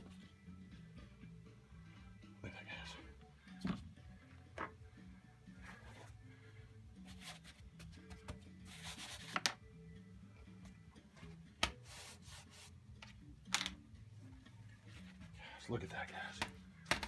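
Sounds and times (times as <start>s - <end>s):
quiet background music: 0.0s - 17.0s
brush strokes on canvas: 11.8s - 12.8s.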